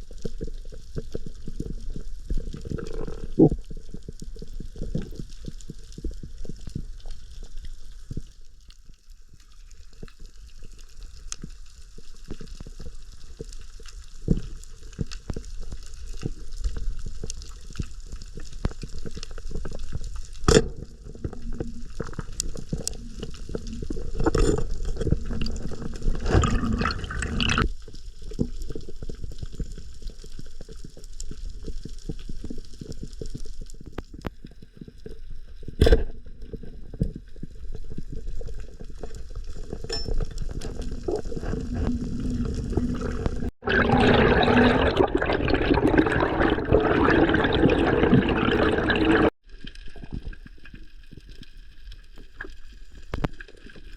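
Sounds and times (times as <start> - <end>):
underwater clicks and crackles: 0.0 - 53.9
underwater rumble of moving water: 0.0 - 53.9
rushing water: 40.8 - 49.3.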